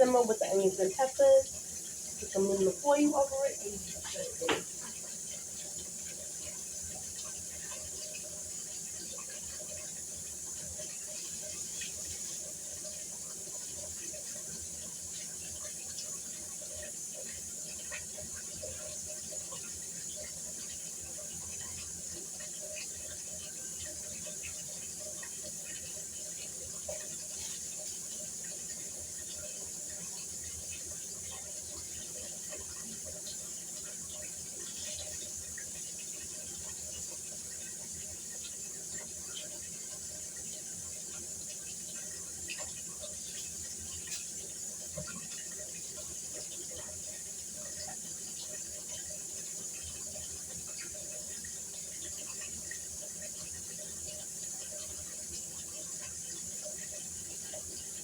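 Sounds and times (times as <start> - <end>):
tap running into sink: 2.3 - 5.2.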